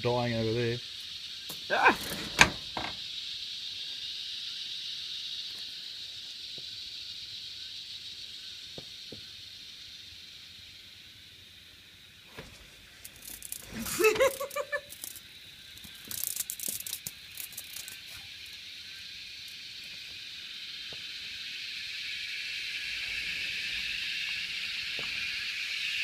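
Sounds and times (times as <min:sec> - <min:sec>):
cicadas buzzing: 0:00.0 - 0:26.0
cicadas clicking and rattling: 0:00.0 - 0:26.0
rising cry: 0:01.6 - 0:02.3.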